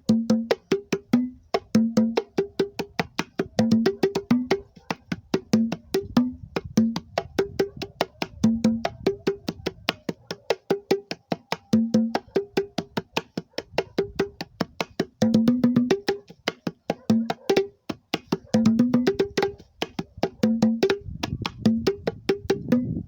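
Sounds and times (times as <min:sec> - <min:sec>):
high-pitched hand drum: 0:00.0 - 0:23.0
low hand drum tones: 0:00.2 - 0:10.2.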